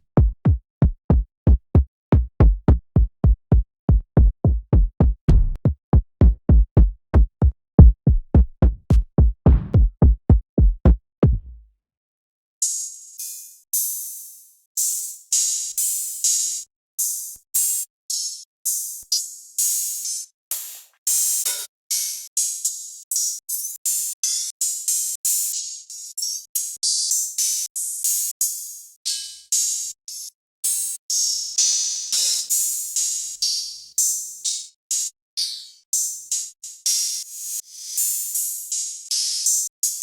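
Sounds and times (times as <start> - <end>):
bass drum hits: 3.2 - 11.5
hi-hat and cymbal hits: 19.2 - 25.7, 29.6 - 35.0, 36.0 - 40.0.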